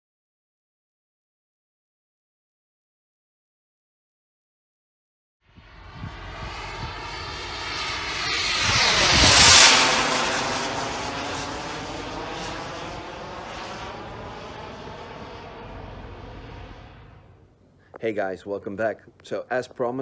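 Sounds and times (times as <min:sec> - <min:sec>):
model jet turbine whine: 0:05.5 - 0:17.6.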